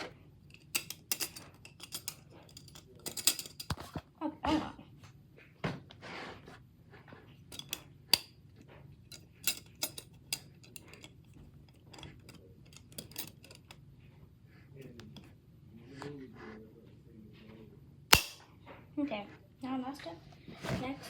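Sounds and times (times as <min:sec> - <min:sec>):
kitchen items clicking on table: 0:00.0 - 0:04.0, 0:07.5 - 0:08.3.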